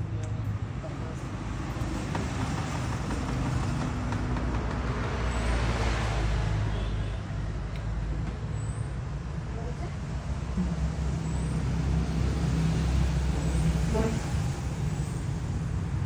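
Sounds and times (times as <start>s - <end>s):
road traffic engine hum: 0.0s - 16.0s
vehicle passing close: 10.2s - 16.0s.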